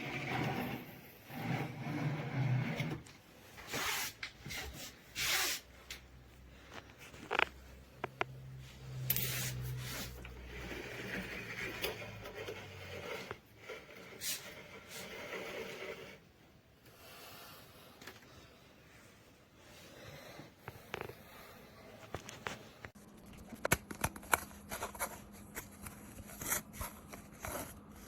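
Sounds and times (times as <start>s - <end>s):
plastic parts rubbing and scraping: 6.6s - 16.3s.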